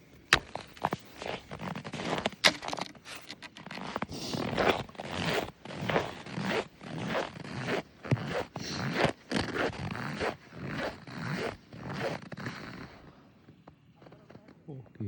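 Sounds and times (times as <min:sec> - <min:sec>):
rasping scrapes: 0:00.8 - 0:12.7.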